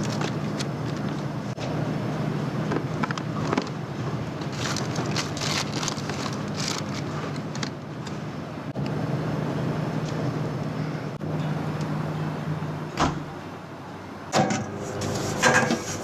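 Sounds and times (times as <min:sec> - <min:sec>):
low mechanical hum: 0:00.0 - 0:16.0
crinkly hissy noise: 0:04.4 - 0:08.3, 0:14.8 - 0:16.0.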